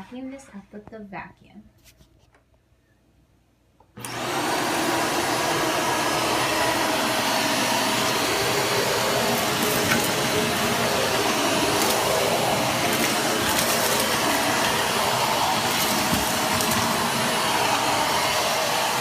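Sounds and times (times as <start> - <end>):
vacuum cleaner motor running: 4.0 - 19.0.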